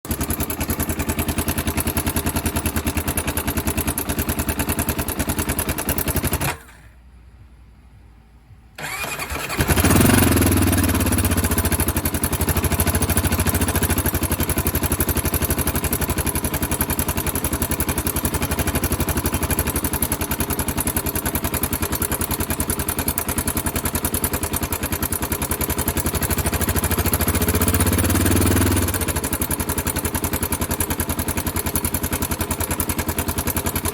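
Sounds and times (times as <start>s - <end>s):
motorcycle engine running and revving: 0.1s - 6.6s, 8.8s - 33.9s
abnormal engine noise: 8.6s - 14.8s.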